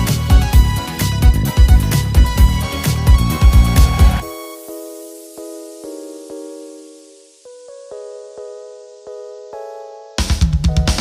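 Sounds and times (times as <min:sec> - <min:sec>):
sustained keyboard chords: 0:00.0 - 0:11.0.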